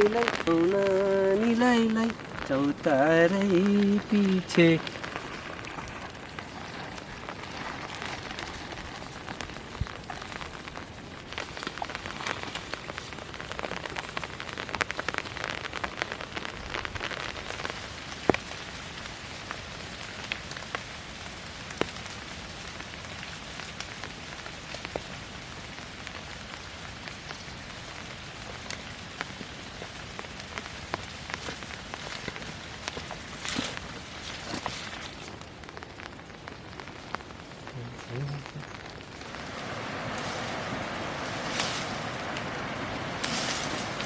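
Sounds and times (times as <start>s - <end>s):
rain falling: 0.0s - 44.0s.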